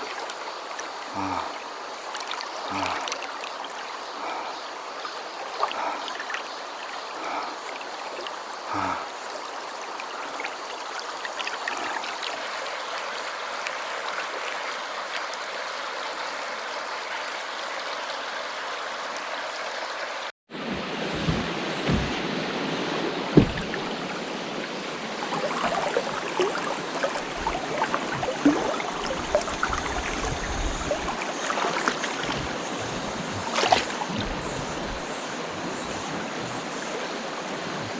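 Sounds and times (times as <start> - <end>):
stream rushing over rocks: 0.0 - 4.0, 7.0 - 37.9
wind: 0.0 - 37.9
person making vocal sounds: 1.1 - 1.6, 2.7 - 3.2, 8.7 - 9.1, 32.0 - 37.9.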